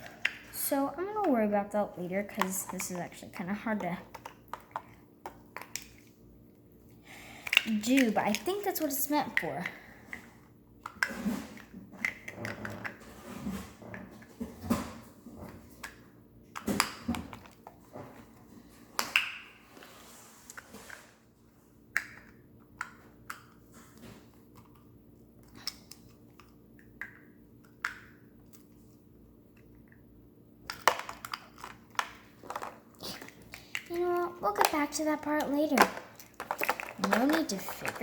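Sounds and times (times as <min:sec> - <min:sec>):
plastic pieces clicking: 0:30.7 - 0:38.0.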